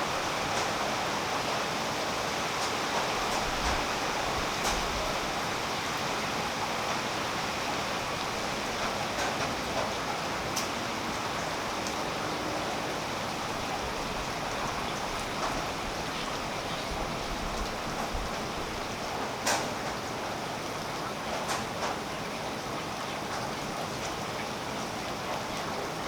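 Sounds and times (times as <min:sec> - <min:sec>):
rain on foliage: 0:00.0 - 0:26.0.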